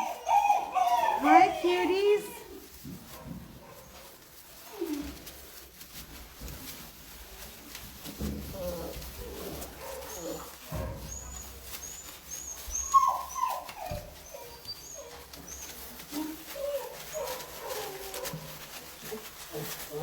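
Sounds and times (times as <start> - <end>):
puppies whimpering and yelping: 0.0 - 2.8, 8.5 - 20.0.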